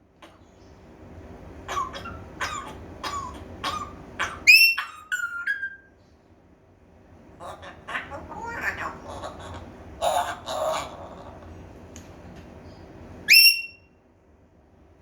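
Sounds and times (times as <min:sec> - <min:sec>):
parrot mimicking coughs: 0:01.7 - 0:04.4
parrot whistling: 0:01.7 - 0:05.9, 0:13.3 - 0:13.9.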